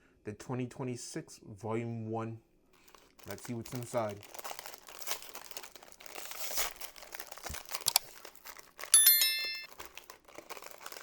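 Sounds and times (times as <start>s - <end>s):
packaging crinkling and tearing: 2.8s - 9.0s, 9.6s - 11.0s
bright bell-like ding: 9.0s - 9.7s.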